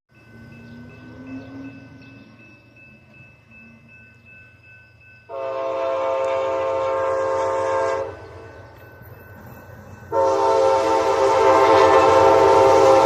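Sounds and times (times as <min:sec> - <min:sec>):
low train rumble: 0:00.1 - 0:13.0
train air horn blast: 0:05.3 - 0:08.3, 0:10.1 - 0:13.0.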